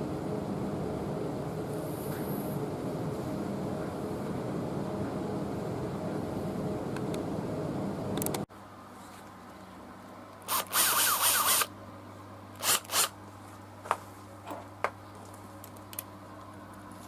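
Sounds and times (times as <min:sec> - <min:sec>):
cordless impact driver running: 0:10.5 - 0:11.7, 0:12.6 - 0:13.1.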